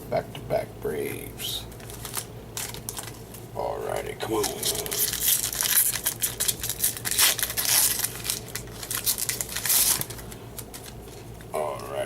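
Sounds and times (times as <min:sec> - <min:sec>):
wrapper crinkling and tearing: 0:01.8 - 0:03.3, 0:04.3 - 0:11.9.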